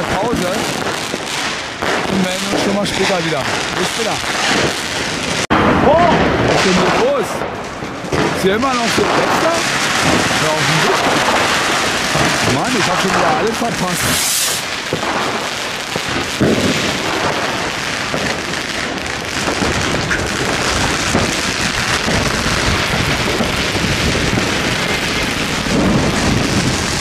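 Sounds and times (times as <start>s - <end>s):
firecrackers crackling: 0.0s - 27.0s
sharp firework bang: 0.0s - 27.0s.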